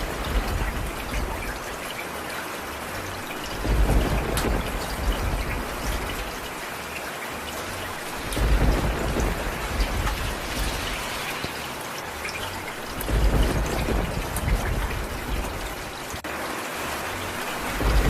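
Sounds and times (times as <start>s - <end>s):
low thunder rumbles: 0.0s - 1.8s, 3.3s - 6.7s, 7.8s - 11.5s, 12.6s - 16.2s, 17.3s - 18.0s
steady rain: 0.0s - 18.0s.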